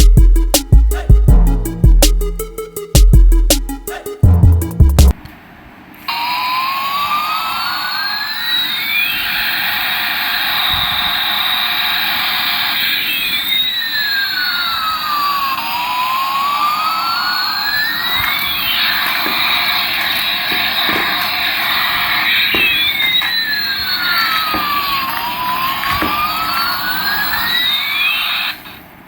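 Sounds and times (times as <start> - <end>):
toy jet engine sound effect: 6.1 - 28.9.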